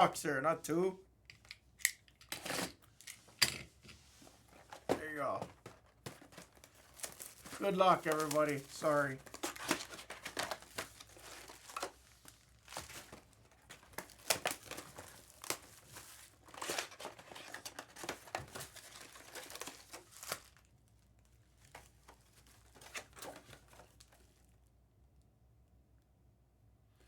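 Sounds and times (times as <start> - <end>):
plastic wrapping crinkling and tearing: 5.0 - 24.3.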